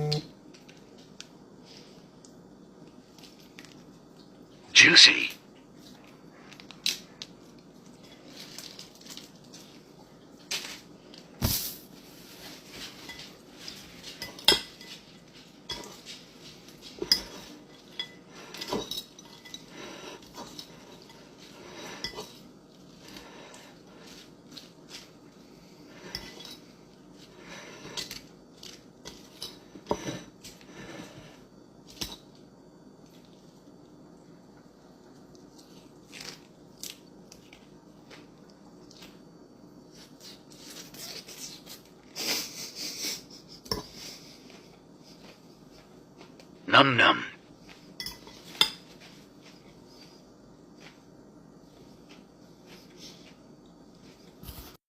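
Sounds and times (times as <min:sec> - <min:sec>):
cutlery clinking against a dish: 0:13.0 - 0:15.0, 0:15.6 - 0:16.1, 0:16.9 - 0:21.3, 0:48.0 - 0:49.0.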